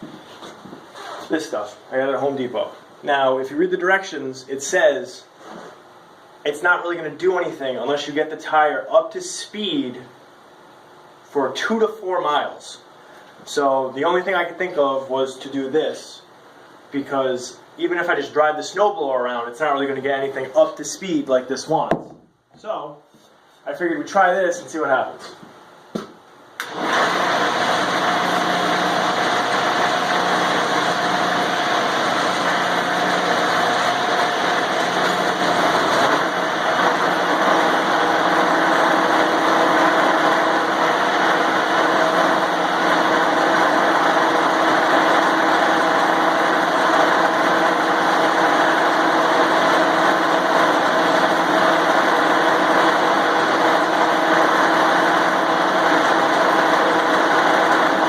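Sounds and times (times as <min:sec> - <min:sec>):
angle grinder whining: 0:26.6 - 0:58.0.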